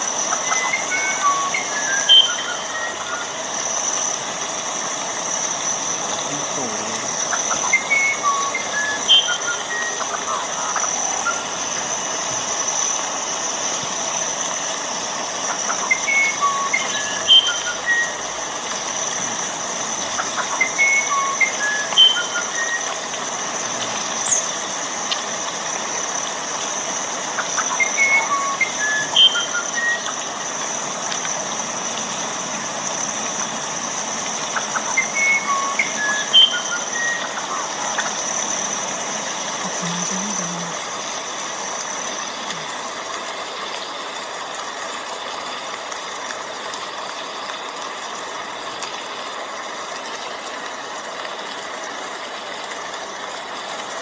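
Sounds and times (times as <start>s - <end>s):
steady rain falling: 0.0s - 54.0s
songbird chirping and whistling: 0.3s - 3.3s, 7.6s - 11.5s, 15.7s - 18.2s, 20.4s - 22.8s, 27.6s - 30.1s, 34.7s - 37.4s.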